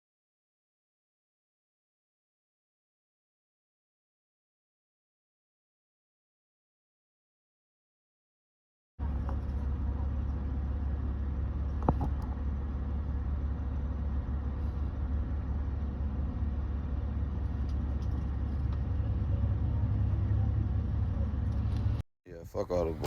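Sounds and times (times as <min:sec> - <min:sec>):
car engine rumbling: 0:09.0 - 0:23.0.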